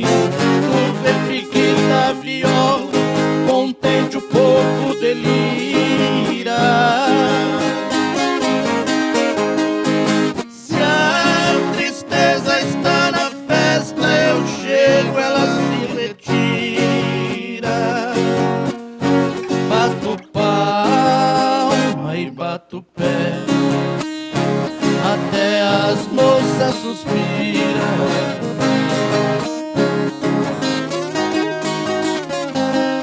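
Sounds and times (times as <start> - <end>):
viola strumming: 0.0 - 22.4, 23.0 - 33.0
acoustic guitar: 0.0 - 33.0.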